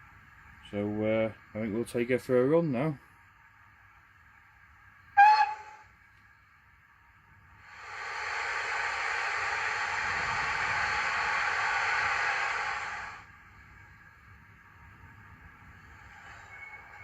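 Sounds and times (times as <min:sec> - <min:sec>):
model train whistle toot: 0:05.1 - 0:05.9
steam hiss: 0:07.5 - 0:17.0.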